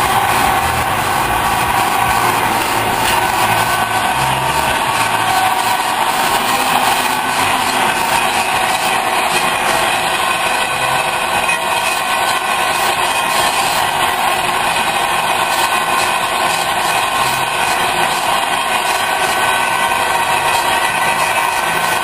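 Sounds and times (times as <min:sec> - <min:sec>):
metal lathe running: 0:00.0 - 0:22.0.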